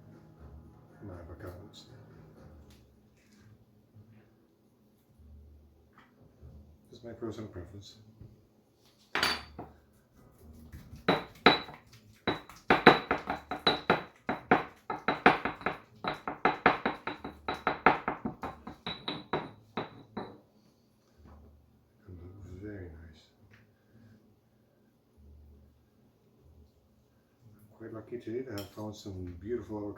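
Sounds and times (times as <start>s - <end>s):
pestle pounding in a mortar: 11.0s - 20.3s.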